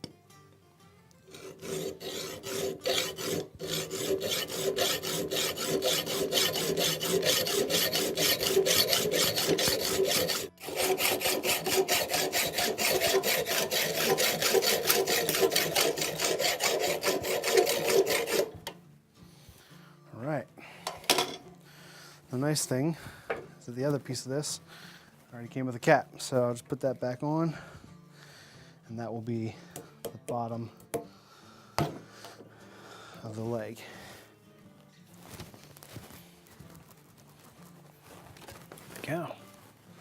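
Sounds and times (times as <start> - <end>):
hand saw cutting metal: 1.3 - 18.8.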